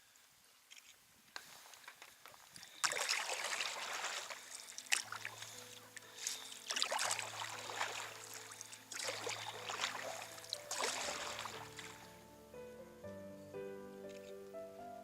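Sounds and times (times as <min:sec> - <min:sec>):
paddle strokes splashing in water: 0:00.6 - 0:12.3
soft background music: 0:02.6 - 0:15.0.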